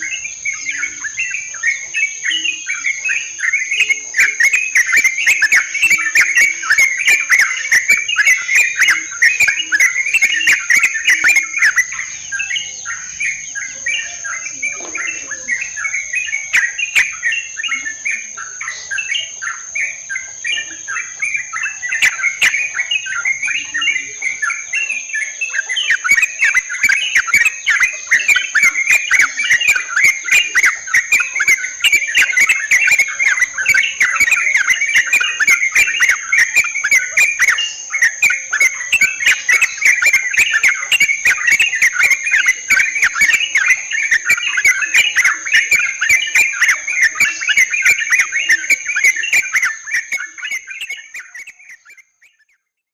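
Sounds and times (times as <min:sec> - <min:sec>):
birds chattering: 0:00.0 - 0:52.7.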